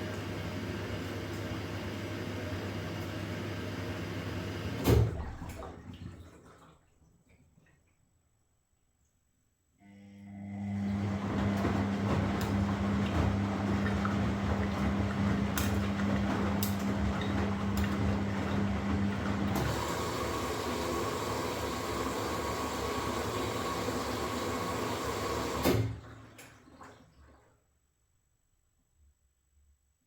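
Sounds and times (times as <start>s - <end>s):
washing machine motor hum: 0.0s - 6.4s, 9.8s - 27.5s.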